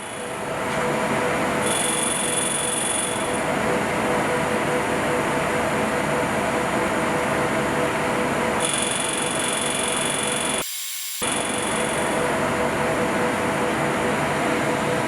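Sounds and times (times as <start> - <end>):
high whine: 8.9 - 12.4.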